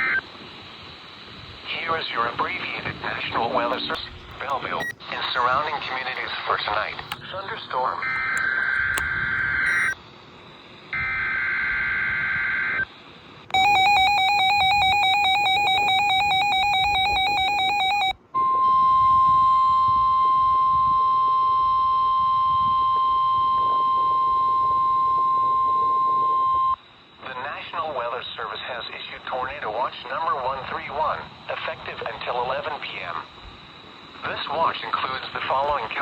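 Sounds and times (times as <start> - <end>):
steady warning alarm tone: 3.2 - 4.2, 8.1 - 10.0, 13.5 - 26.8
warbling electronic alert tone: 3.4 - 4.2, 13.6 - 18.2.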